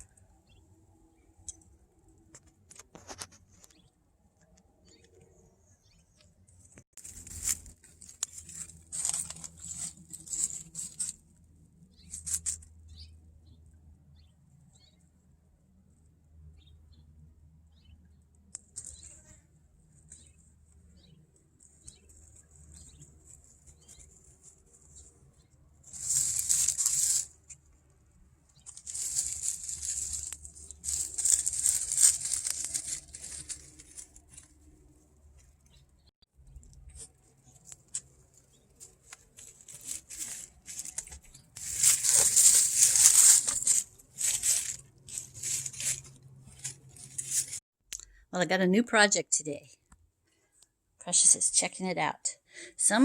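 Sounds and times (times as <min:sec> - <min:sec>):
dog rustling through dry brush: 0:25.8 - 0:27.4, 0:28.6 - 0:34.5, 0:38.4 - 0:47.6.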